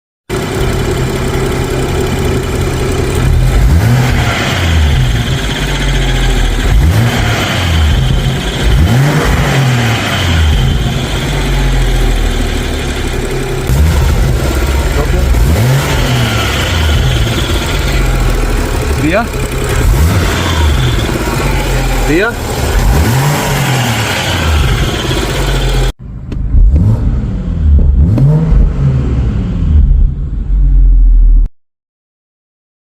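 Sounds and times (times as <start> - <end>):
engine belt squeal: 0.3 - 25.9
car engine revving: 0.3 - 31.3.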